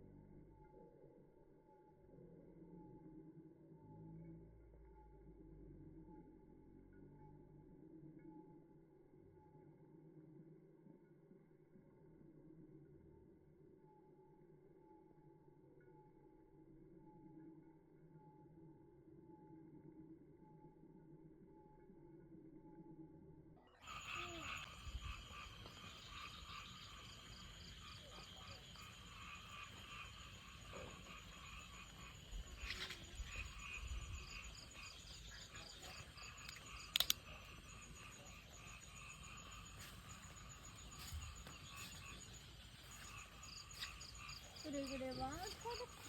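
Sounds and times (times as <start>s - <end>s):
frogs croaking: 23.7s - 46.0s
sharp click: 36.4s - 37.5s.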